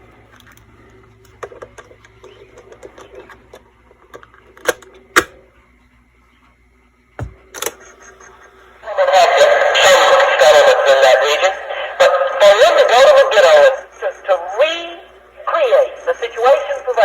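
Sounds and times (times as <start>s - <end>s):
faint steady hum: 0.0s - 17.0s
dull thump: 7.2s - 7.4s.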